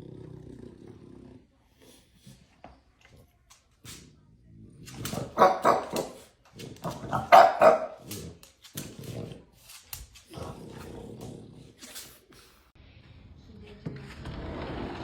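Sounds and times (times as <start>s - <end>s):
dog barking and growling: 4.7s - 12.2s.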